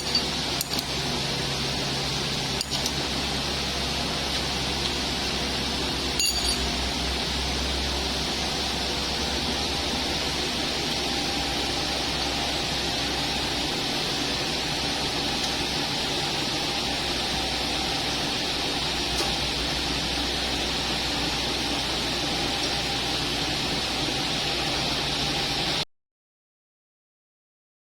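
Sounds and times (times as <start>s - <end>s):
milling machine running: 0.0s - 25.8s
sharp metallic clink: 6.2s - 6.8s.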